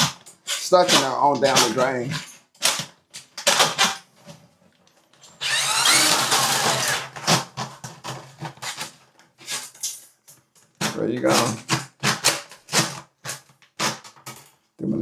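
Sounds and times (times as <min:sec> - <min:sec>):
drain auger motor whirring: 0:05.4 - 0:07.2.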